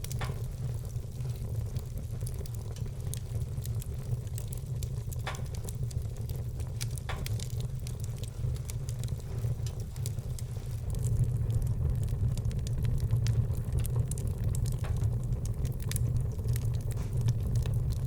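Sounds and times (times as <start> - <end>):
logs crackling and popping: 0.0 - 18.0
low fire rumble: 0.0 - 18.0.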